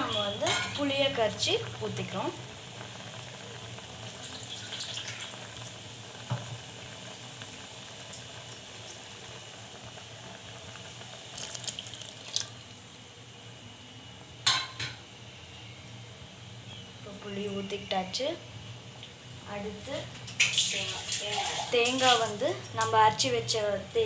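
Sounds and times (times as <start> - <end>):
liquid pouring into a pot: 2.6 - 12.7, 20.3 - 22.4.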